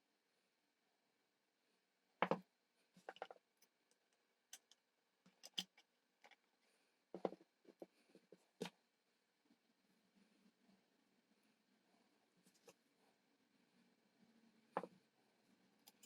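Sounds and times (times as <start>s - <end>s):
small clicks and taps on circuit board: 3.1s - 6.4s.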